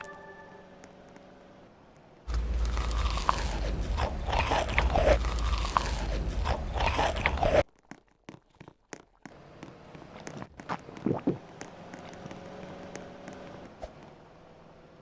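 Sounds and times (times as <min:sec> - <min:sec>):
low rumble: 0:02.3 - 0:07.5
chewing and crunching food: 0:02.3 - 0:14.2.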